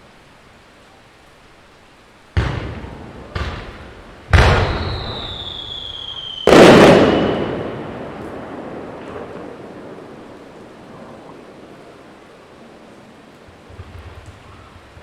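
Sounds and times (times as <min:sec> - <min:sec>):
firework shells booming: 0:02.3 - 0:12.3, 0:13.5 - 0:15.0
firework whistle dropping in pitch: 0:04.3 - 0:08.0.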